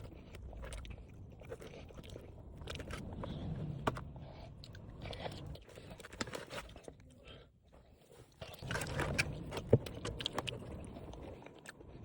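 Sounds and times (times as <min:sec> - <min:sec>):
food being bitten and chewed: 0:00.0 - 0:12.0
wet clicks and crunches: 0:08.2 - 0:12.0.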